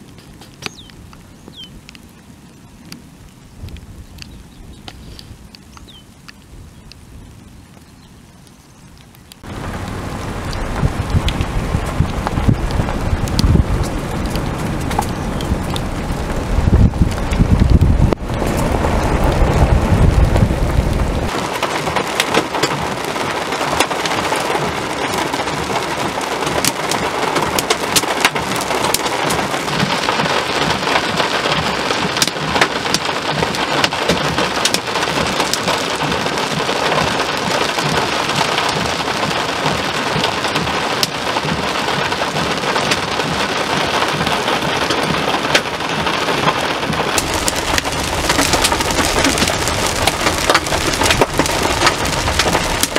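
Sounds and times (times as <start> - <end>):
heavy rain on hard surface: 0.0 - 52.9
deep low rumble: 9.4 - 21.4, 47.2 - 52.9.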